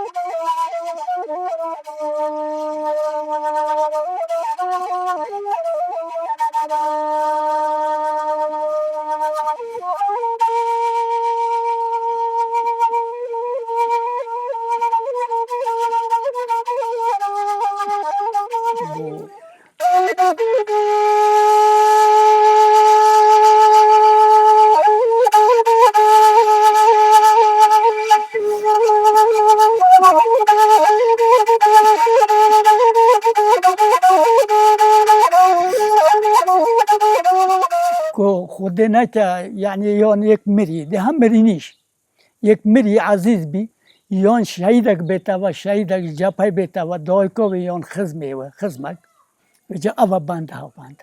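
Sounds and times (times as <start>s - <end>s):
end-blown flute melody: 0.0s - 38.2s.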